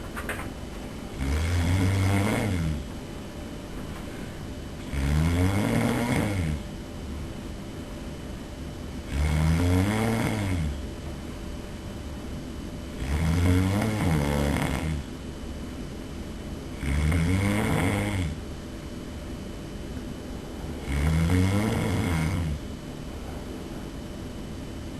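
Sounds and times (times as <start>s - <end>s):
man snoring loudly: 1.1s - 2.9s, 4.8s - 6.7s, 9.0s - 10.8s, 13.0s - 15.1s, 16.7s - 18.4s, 20.8s - 22.6s.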